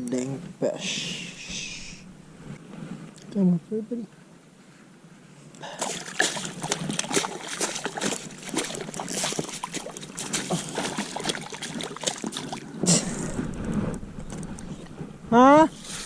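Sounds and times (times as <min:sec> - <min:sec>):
water splashing from thrashing fish: 0:05.6 - 0:12.8.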